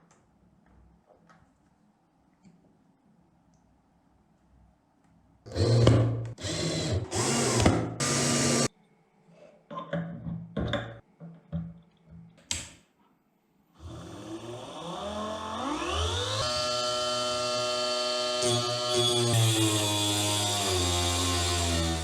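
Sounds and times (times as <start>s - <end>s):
small table saw motor whining: 7.0s - 8.7s, 13.8s - 22.0s.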